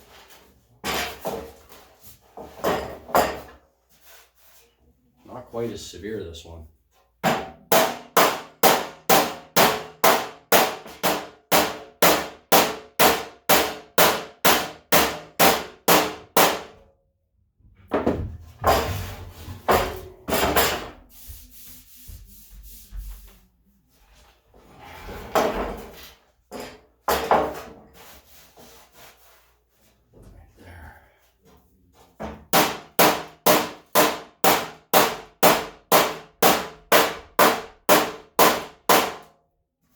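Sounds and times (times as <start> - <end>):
scraping and knocking on panel: 17.7 - 23.4, 24.6 - 29.5.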